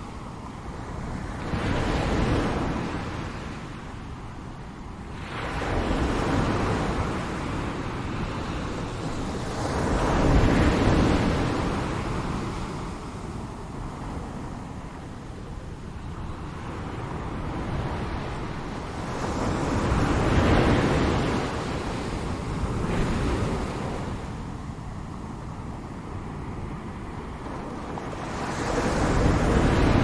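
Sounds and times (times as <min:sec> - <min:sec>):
ocean waves breaking: 0:16.7 - 0:30.0.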